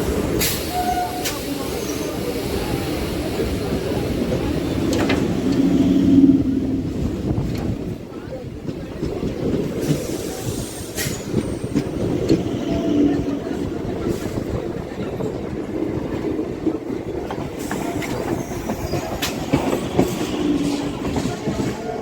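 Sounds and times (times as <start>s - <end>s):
train wheels rumbling: 0.0s - 22.0s.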